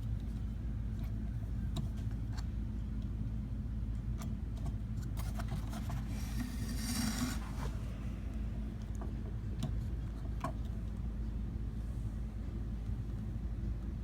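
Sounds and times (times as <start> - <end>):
steady low hum: 5.6 - 14.0.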